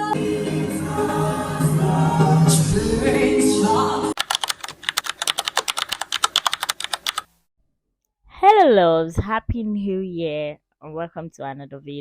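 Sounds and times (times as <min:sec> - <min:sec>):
music with singing voice: 0:00.0 - 0:04.2.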